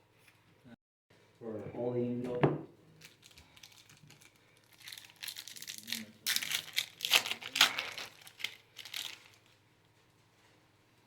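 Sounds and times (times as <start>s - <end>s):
foil wrapper crinkling and tearing: 3.0s - 9.6s.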